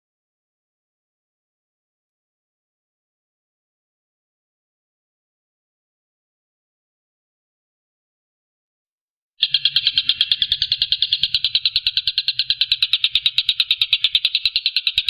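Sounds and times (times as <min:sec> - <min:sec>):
kingfisher rattling trill: 0:09.4 - 0:15.0.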